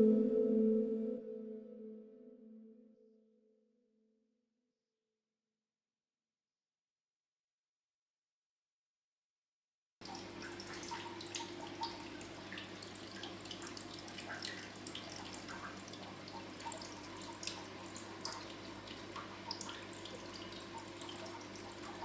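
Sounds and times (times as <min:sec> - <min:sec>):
small water splashes: 0:10.0 - 0:22.0
water trickling and dripping: 0:10.0 - 0:22.0.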